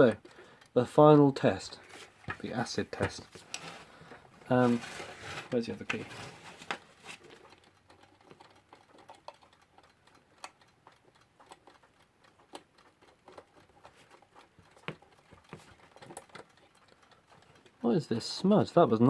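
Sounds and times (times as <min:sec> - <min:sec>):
alarm clock clicks and taps: 0:00.0 - 0:19.0.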